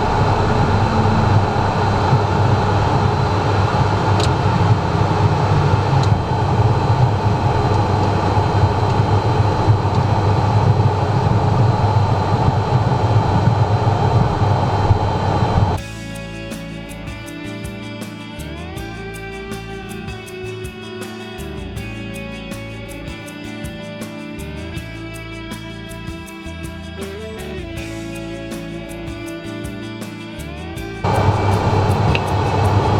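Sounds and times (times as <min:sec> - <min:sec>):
jet engines rumbling: 0:00.0 - 0:15.8, 0:31.0 - 0:32.9
faint high whine: 0:00.0 - 0:16.0, 0:31.0 - 0:32.9.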